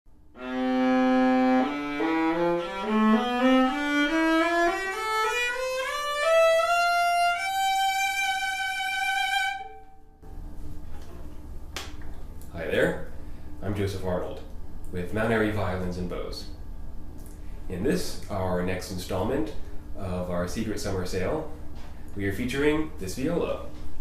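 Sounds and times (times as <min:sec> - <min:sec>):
viola playing rising scale: 0:00.4 - 0:10.2.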